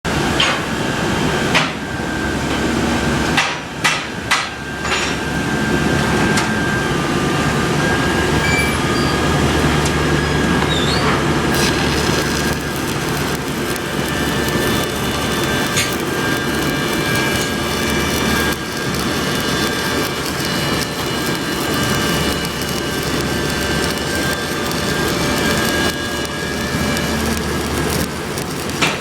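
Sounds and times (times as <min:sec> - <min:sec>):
welding arc crackling: 0:11.4 - 0:29.0.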